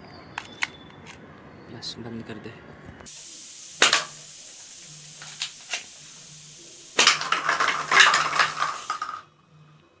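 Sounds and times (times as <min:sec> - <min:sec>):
small hard objects rattling: 0:03.7 - 0:09.3.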